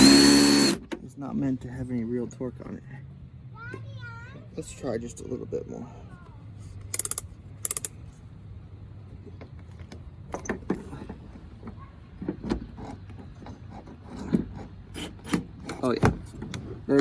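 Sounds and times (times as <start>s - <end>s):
rapid drill clicking: 0.0s - 0.8s, 6.9s - 7.9s
cordless drill driving bolt: 0.0s - 0.9s.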